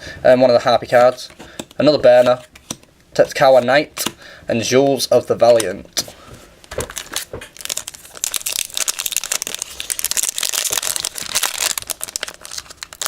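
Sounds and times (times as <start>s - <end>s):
foil wrapper tearing and crinkling: 6.8s - 13.0s.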